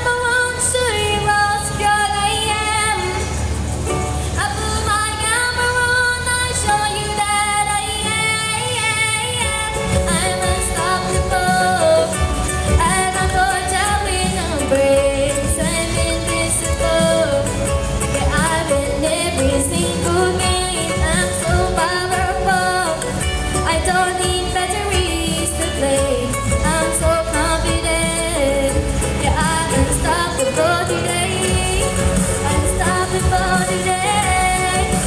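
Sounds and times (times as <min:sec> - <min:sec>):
pop song over speakers: 0:00.0 - 0:35.0.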